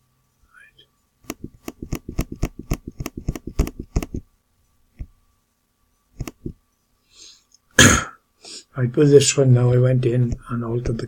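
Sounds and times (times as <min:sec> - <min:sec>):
computer mouse clicking: 0:01.2 - 0:04.2, 0:06.2 - 0:06.6.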